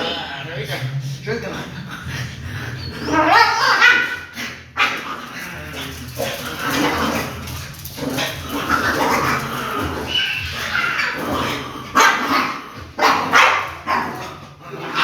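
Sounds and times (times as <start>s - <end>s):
dog whining: 2.7s - 4.4s, 9.2s - 11.6s
dog barking and yipping: 3.0s - 5.1s, 8.2s - 14.2s.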